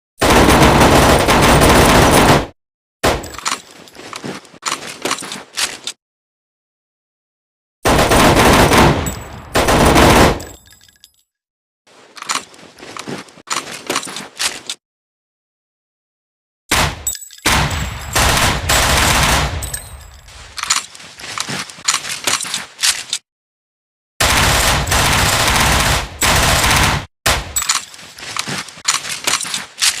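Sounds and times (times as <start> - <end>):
submachine gun automatic bursts: 0.2 - 2.5, 7.9 - 10.5, 24.2 - 27.1
metallic clacks of weapon handling: 3.2 - 6.0, 12.1 - 14.8, 19.6 - 23.2, 27.6 - 30.0.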